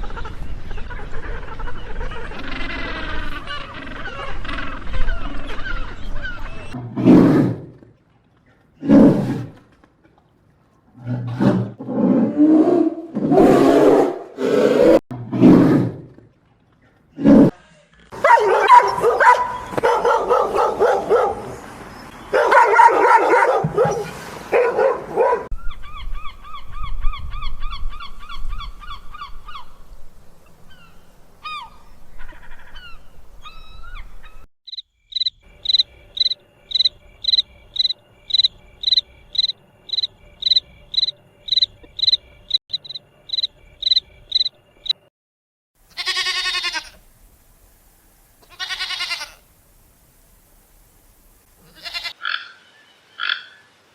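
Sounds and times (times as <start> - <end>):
animal roaring and barking: 6.6 - 7.8, 8.8 - 9.6, 11.0 - 16.2, 17.2 - 21.0
fast chirping trill: 34.7 - 45.1
insect chirping: 34.7 - 45.1.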